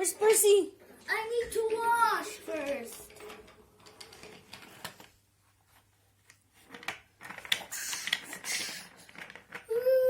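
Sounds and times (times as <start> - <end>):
toy trains clicking and rustling: 0.9 - 5.2, 6.2 - 10.0.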